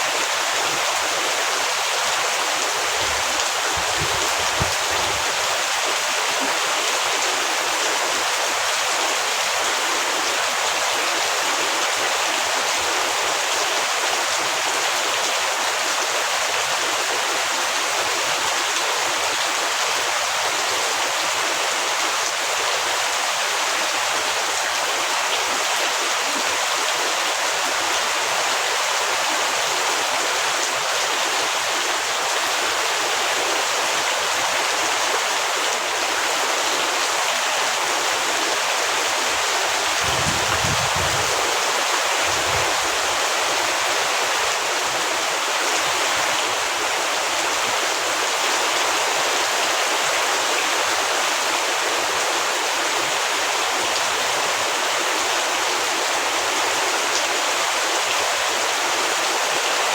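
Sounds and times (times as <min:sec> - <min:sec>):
heavy rain hissing: 0:00.0 - 0:07.8, 0:35.6 - 0:48.3.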